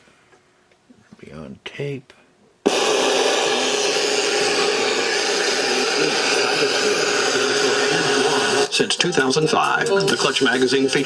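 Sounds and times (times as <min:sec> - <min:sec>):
radio static hiss: 0:02.7 - 0:09.3.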